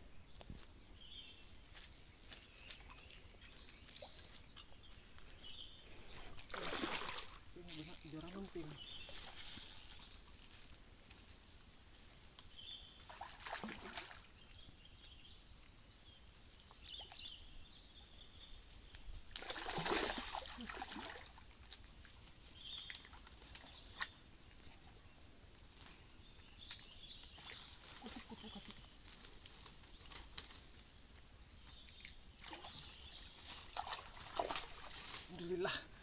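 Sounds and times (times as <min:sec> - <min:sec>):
water sloshing: 0:06.0 - 0:07.4, 0:32.4 - 0:35.6
high-pitched insect drone: 0:06.1 - 0:10.8.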